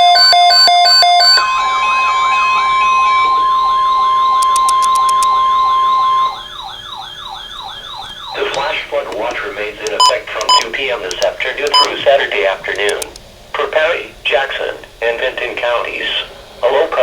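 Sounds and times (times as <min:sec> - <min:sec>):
electronic siren yelping: 0:00.0 - 0:10.7
rapid pulsing beeps: 0:00.0 - 0:12.0.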